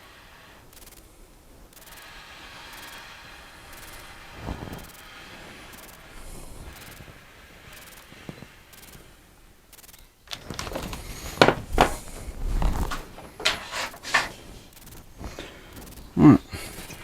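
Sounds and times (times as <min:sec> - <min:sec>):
tools knocking and clunking on bench: 0:10.3 - 0:12.2, 0:12.8 - 0:14.4.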